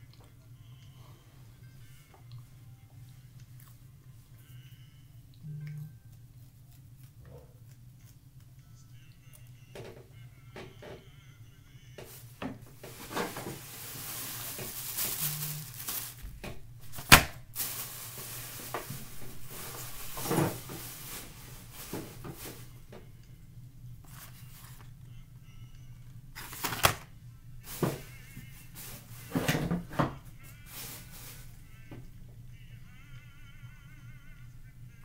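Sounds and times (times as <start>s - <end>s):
chewing and crunching: 1.8s - 9.7s.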